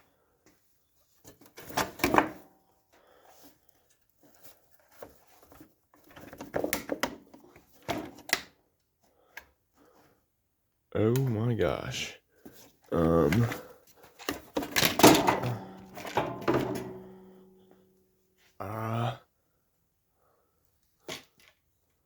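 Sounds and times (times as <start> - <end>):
metal cover rattling and scraping: 14.6 - 17.2.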